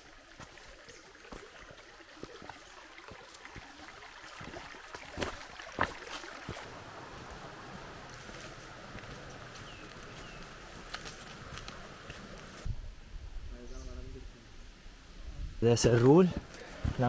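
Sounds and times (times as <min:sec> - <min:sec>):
footsteps and scuffs on rock: 0:00.3 - 0:07.5, 0:08.1 - 0:12.7, 0:15.9 - 0:17.0.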